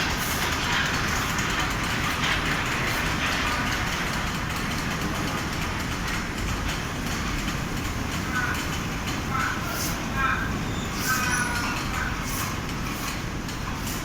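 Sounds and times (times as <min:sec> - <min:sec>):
fabric spreader machine running: 0:00.0 - 0:10.7
factory noise: 0:00.0 - 0:14.0.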